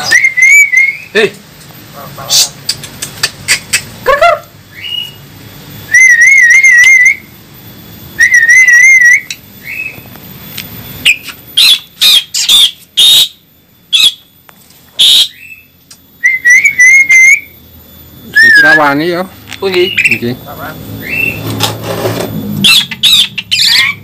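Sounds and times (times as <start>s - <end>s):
starling whistled notes: 0.0s - 1.2s, 4.7s - 7.4s, 8.0s - 10.1s, 11.0s - 14.2s, 15.0s - 21.5s, 22.6s - 24.0s
harsh short bird calls: 0.0s - 1.3s, 11.0s - 14.3s, 15.0s - 17.6s, 19.6s - 21.6s, 22.6s - 24.0s.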